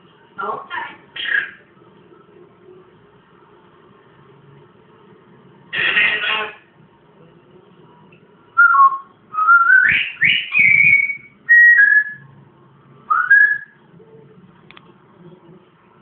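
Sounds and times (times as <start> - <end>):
parrot whistling: 8.6 - 12.3, 13.1 - 13.8.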